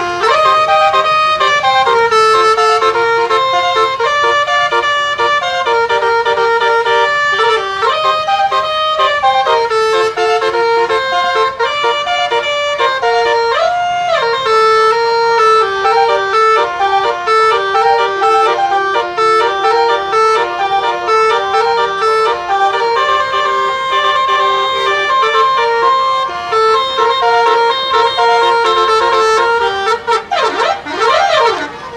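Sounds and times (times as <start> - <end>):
musical truck air horn: 0.0 - 31.9.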